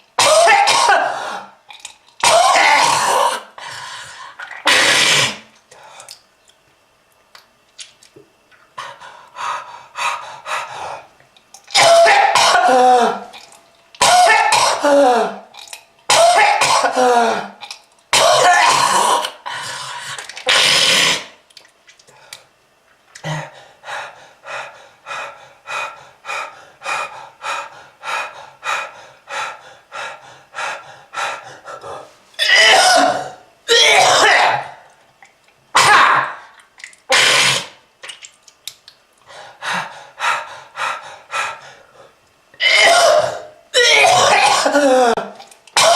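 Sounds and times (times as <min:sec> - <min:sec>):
person coughing: 0:00.2 - 0:01.3, 0:02.2 - 0:03.5, 0:11.8 - 0:13.3, 0:14.0 - 0:15.4, 0:16.1 - 0:17.6, 0:18.2 - 0:19.3, 0:32.4 - 0:34.8, 0:42.6 - 0:45.9.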